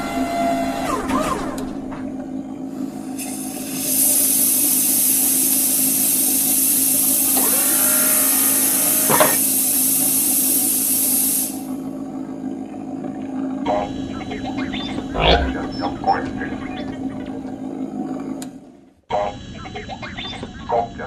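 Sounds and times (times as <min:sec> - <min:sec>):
low mechanical hum: 0:00.0 - 0:21.0
gliding electronic tones: 0:14.6 - 0:17.3.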